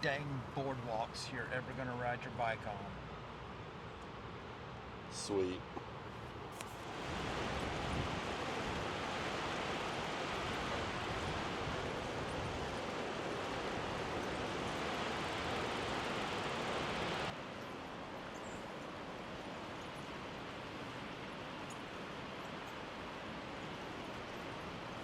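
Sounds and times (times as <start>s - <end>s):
wind: 0.0s - 25.0s
tyres rolling on trail: 6.0s - 17.4s.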